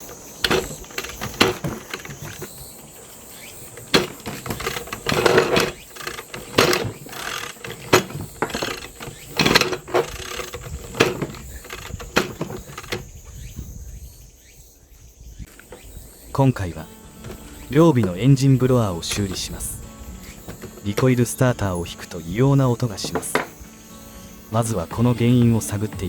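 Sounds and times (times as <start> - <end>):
recoil starter rattling clank: 0.0 - 13.1, 16.6 - 26.0.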